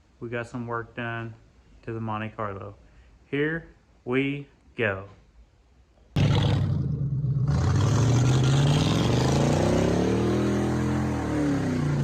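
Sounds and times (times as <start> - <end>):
car engine revving: 6.2 - 12.0.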